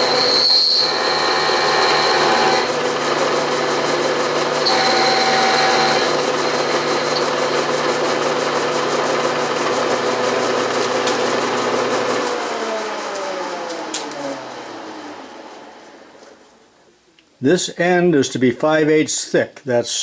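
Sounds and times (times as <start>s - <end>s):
milling machine cutting steel: 0.0s - 12.2s.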